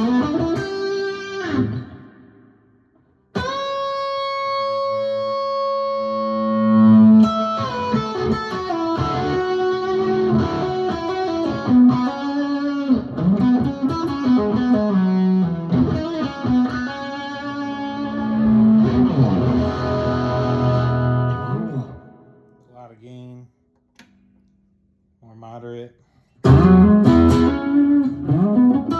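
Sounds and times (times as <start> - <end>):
electric guitar picked lines: 3.4 - 22.4.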